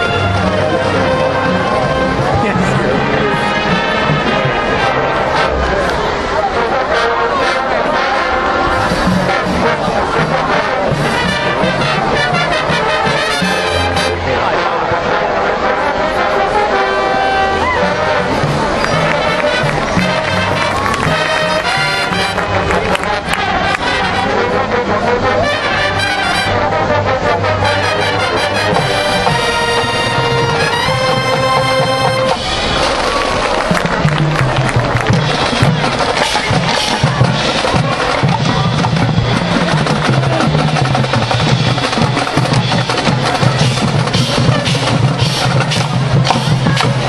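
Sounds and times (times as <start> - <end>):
low bass line: 0.0 - 6.6, 17.5 - 47.0
drums: 0.0 - 47.0
marching band playing: 0.0 - 47.0
trombones and trumpets: 0.0 - 47.0.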